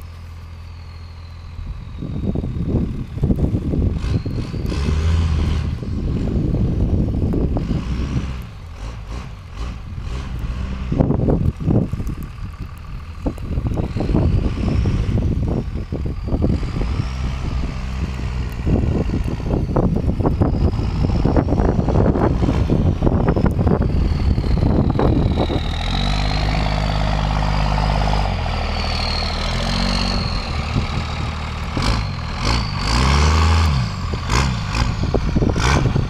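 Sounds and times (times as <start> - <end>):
diesel engine revving: 0.0 - 36.0
turbo whine: 0.0 - 36.0.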